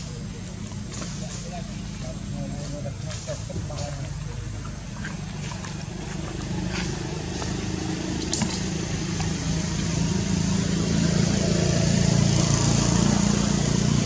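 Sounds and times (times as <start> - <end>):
vehicle engine running: 0.0 - 14.0.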